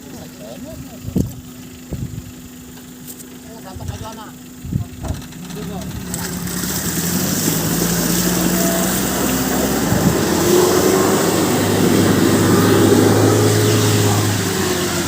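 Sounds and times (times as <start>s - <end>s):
engine pulling under load: 5.0s - 15.0s
steady rushing noise: 7.6s - 15.0s.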